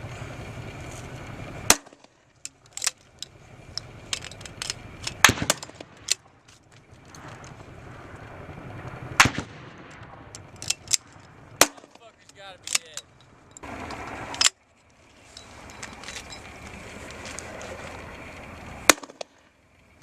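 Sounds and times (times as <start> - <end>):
gunshots: 5.1 - 6.2, 9.2 - 10.3, 11.6 - 13.0.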